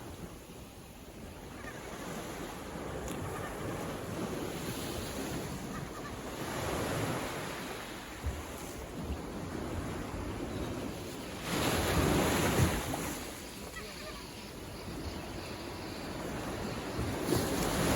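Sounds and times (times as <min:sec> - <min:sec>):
ocean waves breaking on shore: 0:00.0 - 0:17.9
wind buffeting microphone: 0:08.1 - 0:17.9.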